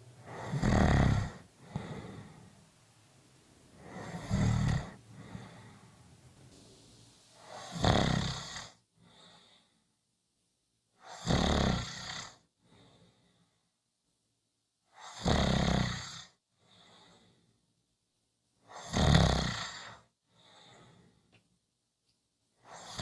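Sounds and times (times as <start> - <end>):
person snoring: 0.2 - 2.5, 3.8 - 5.9, 7.4 - 8.7
quiet short breath: 3.8 - 7.7.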